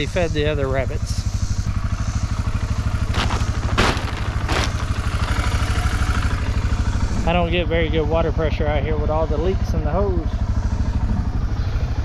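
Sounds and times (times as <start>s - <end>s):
engine running: 0.0s - 12.0s
short gritty noises: 3.0s - 5.3s.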